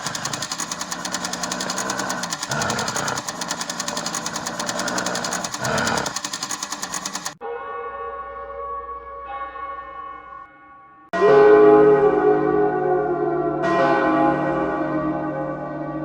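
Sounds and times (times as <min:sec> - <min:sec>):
machine-like clatter: 0:00.0 - 0:07.4.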